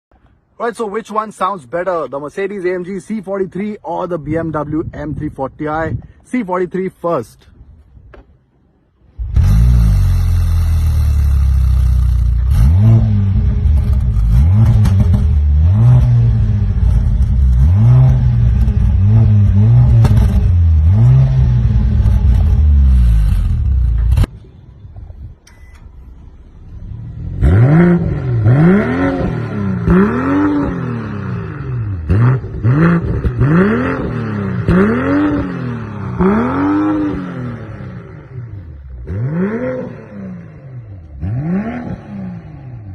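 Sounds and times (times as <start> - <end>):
car engine revving: 9.1 - 24.3, 26.6 - 42.9
rasping turbocharged engine revving: 9.1 - 24.3, 26.8 - 42.9.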